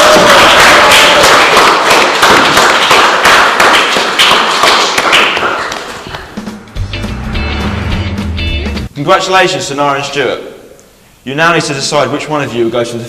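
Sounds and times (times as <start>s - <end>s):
studio audience clapping: 0.0s - 6.1s.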